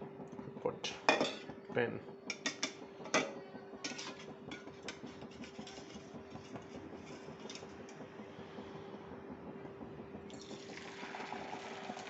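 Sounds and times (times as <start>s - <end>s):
egg crackling in a pan: 3.8s - 8.0s.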